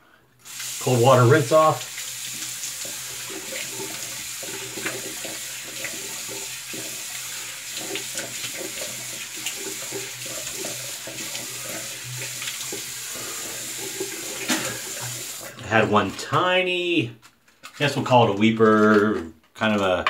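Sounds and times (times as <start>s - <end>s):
tap water running into sink: 0.4s - 15.6s
water splashing: 0.4s - 15.6s.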